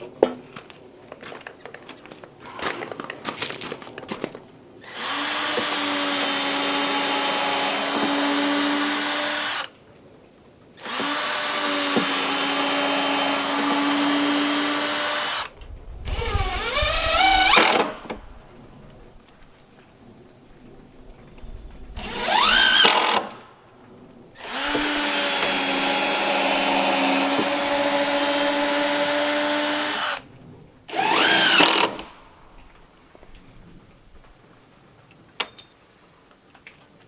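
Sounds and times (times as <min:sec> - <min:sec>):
cordless drill driving screws: 0:04.8 - 0:09.7, 0:10.8 - 0:15.5, 0:16.1 - 0:18.7, 0:22.0 - 0:23.4, 0:24.4 - 0:30.3, 0:30.9 - 0:32.8.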